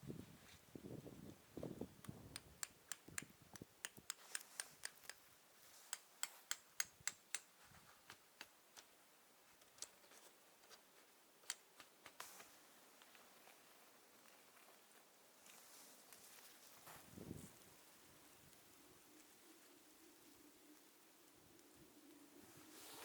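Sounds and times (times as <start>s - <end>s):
sharp clicks and ticks: 2.0s - 5.2s, 5.9s - 7.5s.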